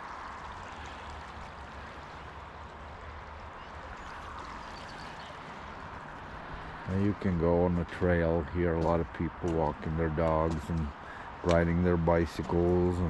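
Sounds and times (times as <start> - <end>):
creek water flowing and trickling: 0.0 - 13.0.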